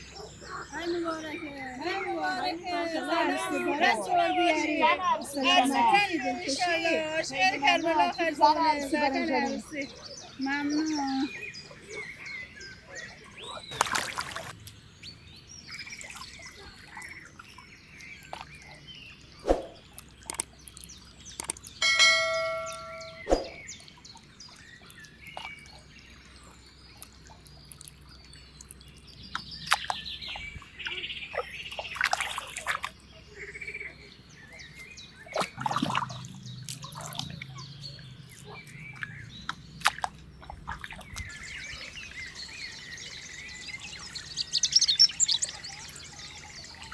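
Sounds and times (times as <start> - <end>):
bird chirps: 9.4 - 39.8, 40.4 - 46.9.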